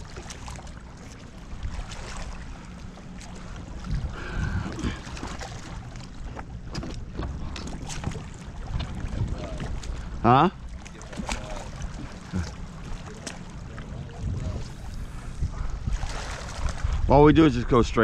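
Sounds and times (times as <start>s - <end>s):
water lapping around kayak: 0.0s - 18.0s
wind rumbling on microphone: 3.6s - 5.8s, 6.6s - 10.2s, 13.7s - 18.0s.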